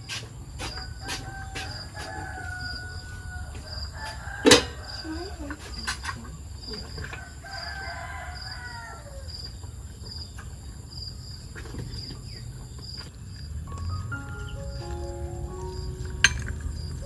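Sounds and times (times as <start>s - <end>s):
insects chirping: 0.0s - 17.0s
rooster crowing: 0.7s - 5.4s, 7.2s - 9.3s.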